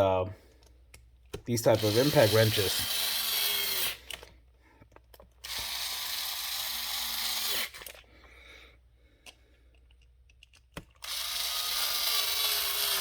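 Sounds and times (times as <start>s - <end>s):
impact wrench motor whirring: 1.6s - 4.4s, 5.4s - 8.1s, 11.0s - 13.0s.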